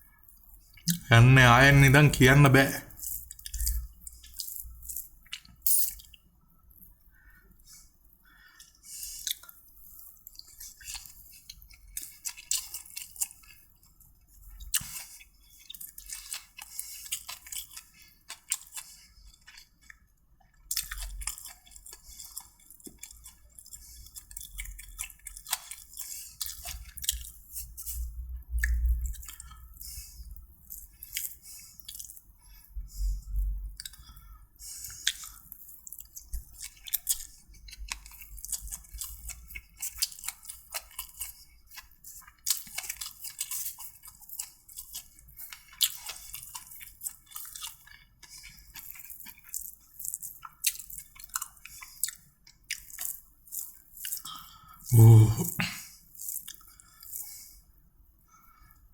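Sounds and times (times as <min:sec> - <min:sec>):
person chewing food: 0:00.1 - 0:58.8
wet mouth clicks: 0:00.8 - 0:01.7, 0:05.4 - 0:06.2, 0:54.1 - 0:55.9.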